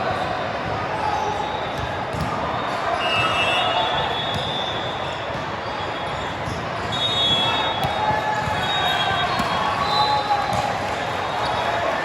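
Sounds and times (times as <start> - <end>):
murmur of crowd voices: 0.0 - 12.0.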